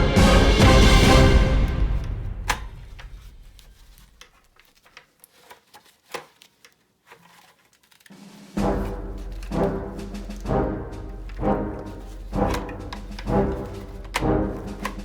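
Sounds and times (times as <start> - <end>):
background music: 0.0 - 3.3, 8.3 - 15.0.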